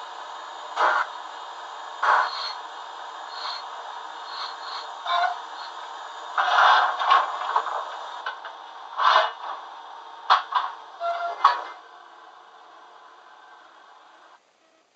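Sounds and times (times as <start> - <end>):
steady steam hiss: 0.0 - 11.0.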